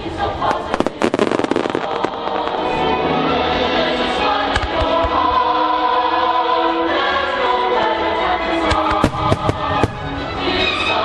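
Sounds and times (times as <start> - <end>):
choir singing held chords: 0.0 - 11.0
firework bangs: 0.4 - 3.0, 8.7 - 10.2.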